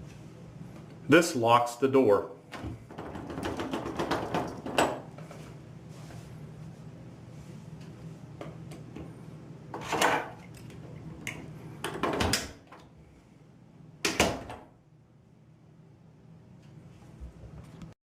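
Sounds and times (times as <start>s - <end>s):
door rattling in its frame: 2.6s - 5.1s
loud door clattering: 2.6s - 5.1s.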